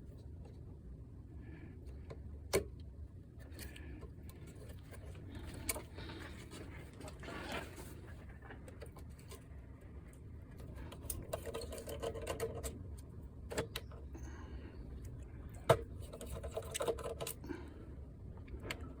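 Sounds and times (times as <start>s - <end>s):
screwdriver rattling: 10.8s - 12.8s, 16.0s - 17.4s.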